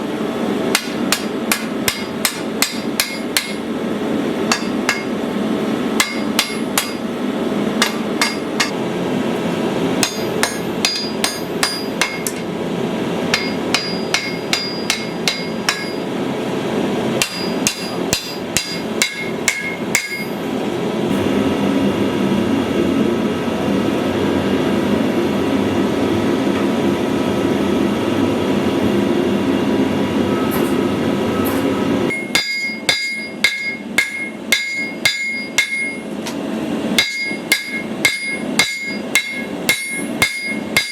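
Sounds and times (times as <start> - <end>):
hammer striking metal on anvil: 0.7 - 3.7, 4.5 - 5.2, 6.0 - 7.1, 7.8 - 8.8, 10.0 - 12.5, 13.3 - 16.1, 17.2 - 20.4, 32.1 - 36.4, 37.0 - 40.9.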